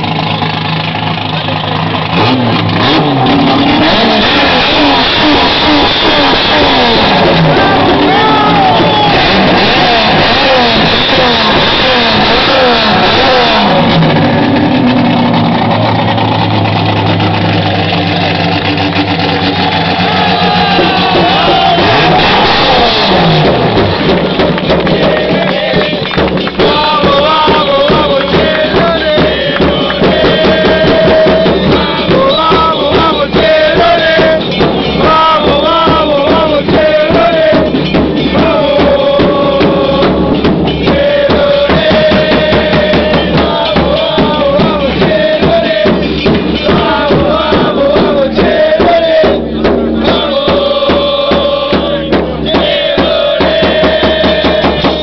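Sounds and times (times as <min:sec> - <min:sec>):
drums and percussion: 0:00.0 - 0:55.0
sung or chanted melody: 0:00.0 - 0:55.0.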